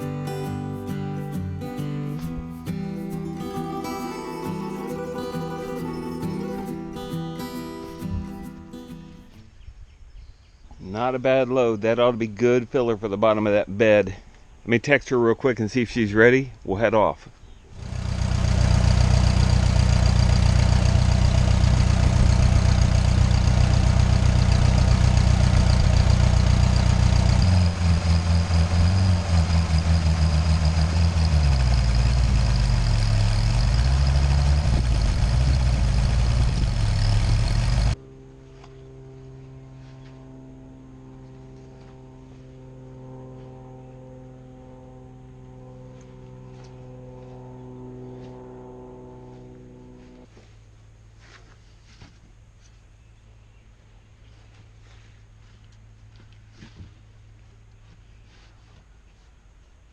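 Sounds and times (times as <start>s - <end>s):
faint steady tones: 0.0s - 9.4s, 19.2s - 51.3s
vehicle engine running: 0.0s - 9.4s, 17.7s - 59.3s.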